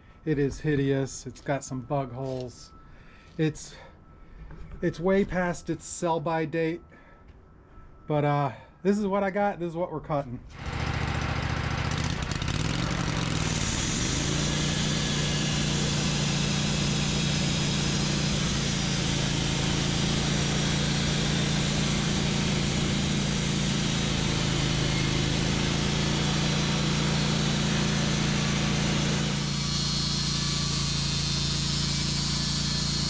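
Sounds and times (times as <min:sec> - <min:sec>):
sawmill engine running: 0:10.5 - 0:33.0.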